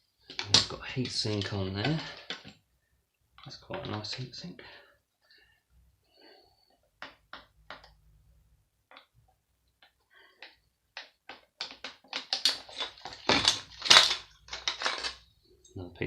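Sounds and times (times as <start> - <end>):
metal parts clicking and clinking: 10.4 - 15.3.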